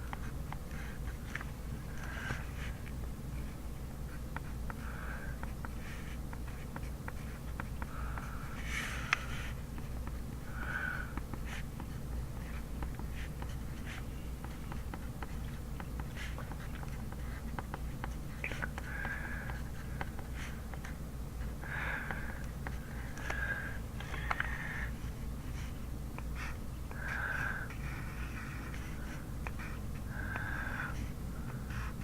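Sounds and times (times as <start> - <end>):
steady low hum: 0.0 - 32.0
pen scratching on paper: 3.4 - 10.3, 11.0 - 21.0, 27.6 - 32.0.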